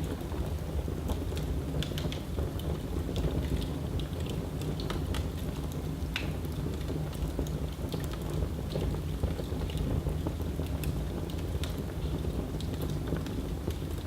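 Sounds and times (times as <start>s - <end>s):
wood fire crackling and popping: 0.1s - 14.0s.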